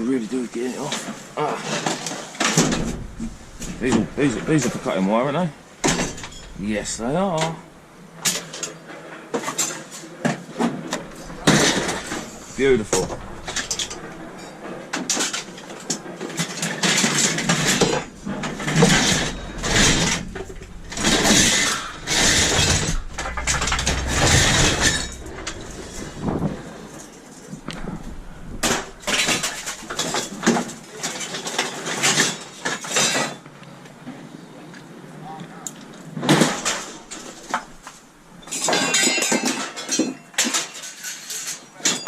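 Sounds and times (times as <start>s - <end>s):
scrap metal clanking and scraping: 1.9s - 4.9s, 5.8s - 8.4s, 10.9s - 26.7s.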